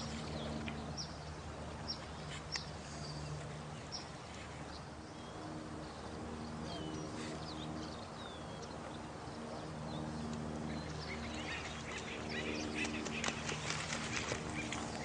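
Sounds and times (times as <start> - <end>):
birds chirping and calling: 10.7 - 15.0.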